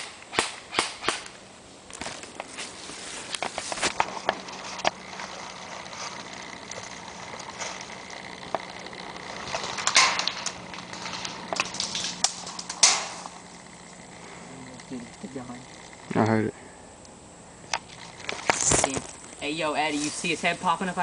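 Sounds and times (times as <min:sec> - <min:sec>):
airsoft guns firing: 0:00.0 - 0:01.4, 0:09.8 - 0:10.4, 0:11.6 - 0:13.3.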